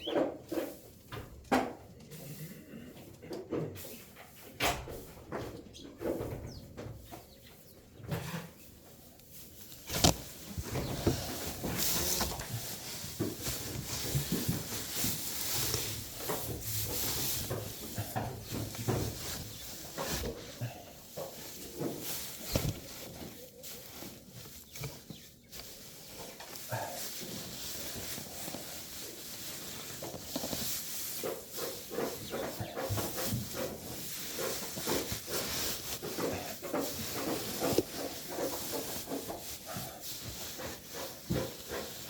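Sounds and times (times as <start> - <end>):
goats chewing: 6.9 - 42.0
goats knocking against buckets: 9.9 - 23.1, 30.2 - 42.0.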